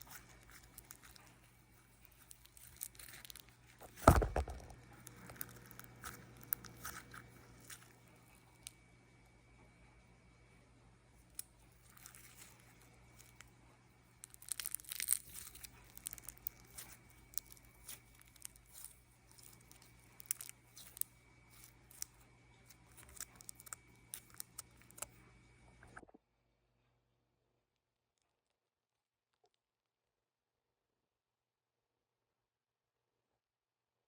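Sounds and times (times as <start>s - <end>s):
rustling: 0.0s - 8.7s, 11.3s - 25.1s
sharp crinkling crackles: 0.0s - 8.8s, 11.3s - 25.2s
low electrical hum: 0.0s - 27.4s.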